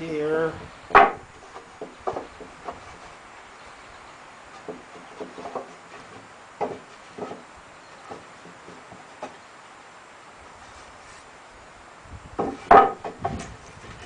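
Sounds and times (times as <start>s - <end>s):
wooden pallet boards knocking: 0.9s - 2.9s, 4.6s - 9.4s, 12.4s - 13.6s.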